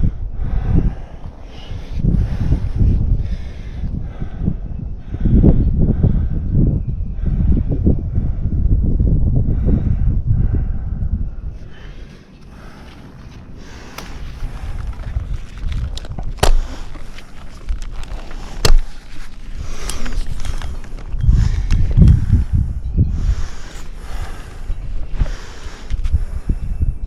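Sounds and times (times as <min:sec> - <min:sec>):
wind buffeting microphone: 0:00.0 - 0:27.0.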